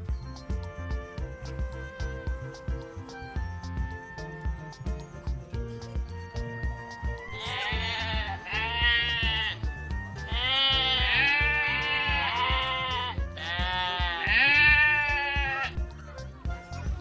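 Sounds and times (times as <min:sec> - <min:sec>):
background music with steady beat: 0:00.0 - 0:17.0.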